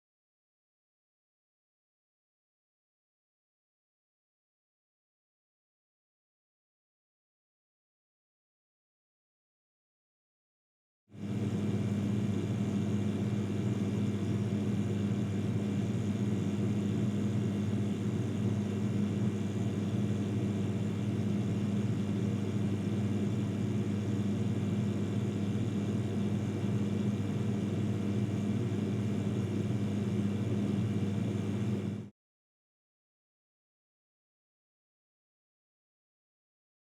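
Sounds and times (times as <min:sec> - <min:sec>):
refrigerator compressor humming: 0:11.2 - 0:32.1.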